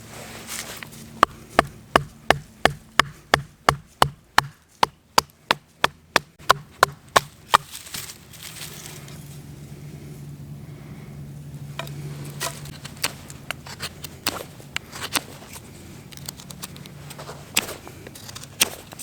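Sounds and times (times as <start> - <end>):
sharp knocks on wood: 1.2 - 7.7.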